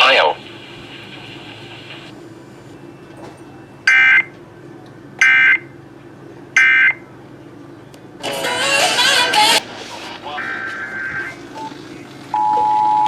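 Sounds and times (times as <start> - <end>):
radio station audio: 0.0 - 2.1, 9.0 - 12.2
low steady hum: 0.0 - 13.0
digital data tone bursts: 10.0 - 13.0.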